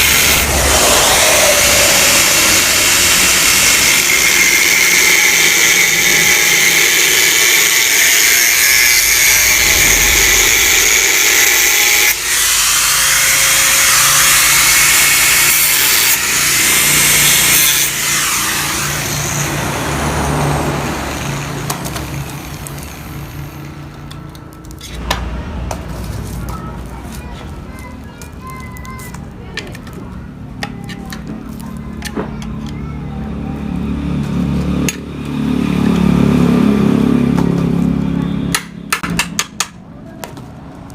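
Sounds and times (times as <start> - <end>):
dense hiss: 0.0 - 5.7, 9.0 - 15.1
low hum: 0.0 - 6.1, 8.6 - 15.0
power tool whining on metal: 0.0 - 23.4.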